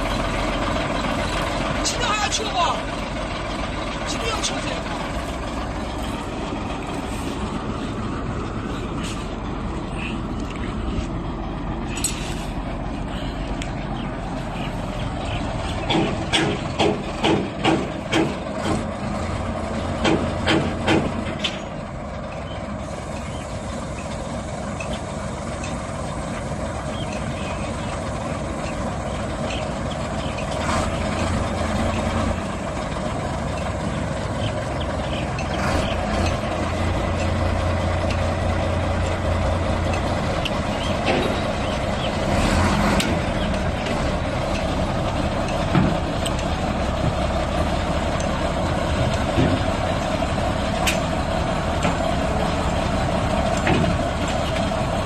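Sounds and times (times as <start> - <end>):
diesel machinery engine droning: 0.0 - 55.0.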